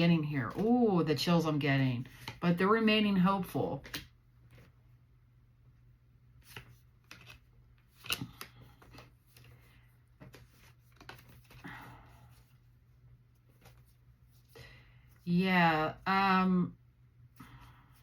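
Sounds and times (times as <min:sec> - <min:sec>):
low steady hum: 0:00.0 - 0:18.0
cards rustling and tapping: 0:02.0 - 0:02.5, 0:03.8 - 0:04.7, 0:06.4 - 0:14.6.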